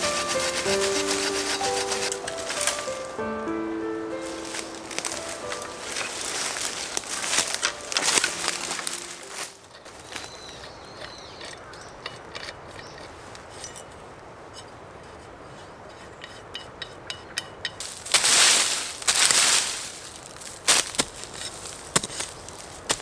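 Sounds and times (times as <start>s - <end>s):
dry leaves crunching and rustling: 0.0s - 11.3s, 17.8s - 23.0s
bird chirps: 7.7s - 13.1s.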